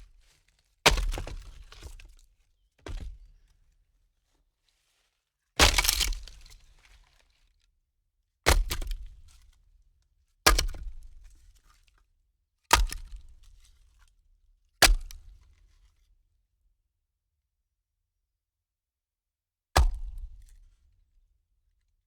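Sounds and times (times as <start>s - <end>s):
logs clattering on a pile: 5.6s - 6.5s.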